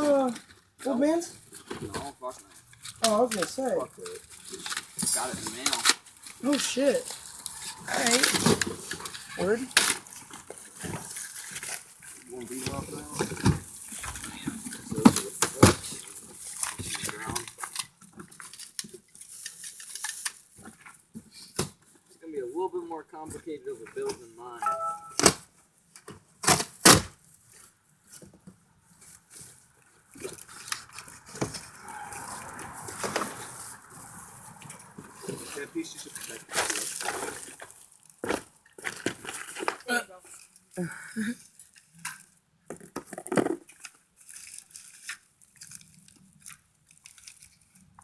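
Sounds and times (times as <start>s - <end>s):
wrapping rustling and scraping: 0.0s - 22.2s, 25.6s - 40.8s, 41.4s - 48.0s
packaging rustling: 36.0s - 40.6s, 43.5s - 47.9s.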